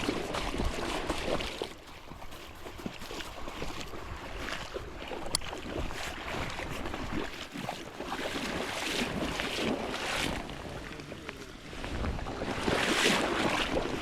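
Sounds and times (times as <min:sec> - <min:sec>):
fast creek water rushing: 0:00.0 - 0:14.0
wind buffeting microphone: 0:11.6 - 0:14.0.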